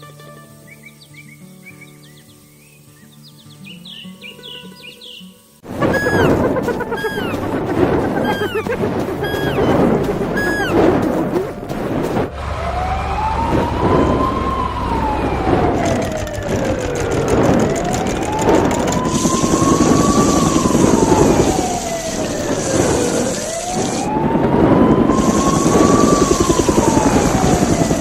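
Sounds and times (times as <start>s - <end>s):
vehicle noise: 5.6s - 28.0s
wailing siren: 5.7s - 11.6s, 12.3s - 28.0s.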